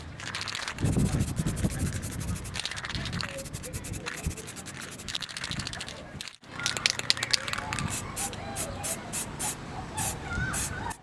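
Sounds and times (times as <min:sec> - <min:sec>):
rapid scratching on hard surface: 0:00.8 - 0:05.6.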